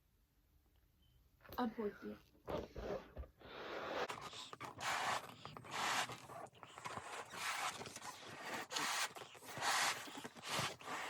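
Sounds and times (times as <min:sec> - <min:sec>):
person blowing up balloon: 0:03.4 - 0:11.0.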